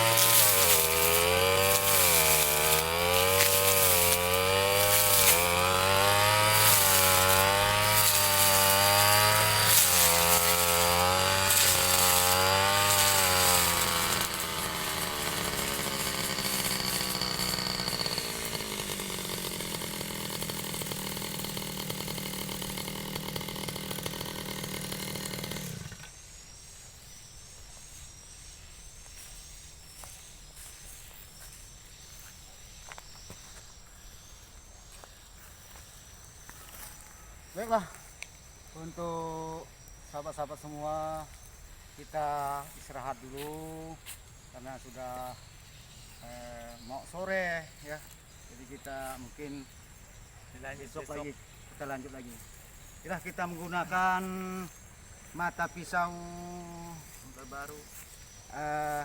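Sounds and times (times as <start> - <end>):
brush cutter running: 0.0 - 26.4, 50.6 - 59.0
faint insects chirping: 0.0 - 59.0.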